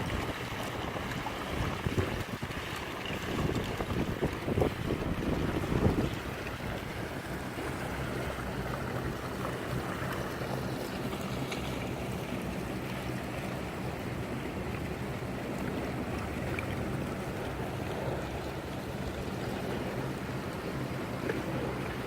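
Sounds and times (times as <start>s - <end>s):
strong wind blowing: 0.0s - 7.4s.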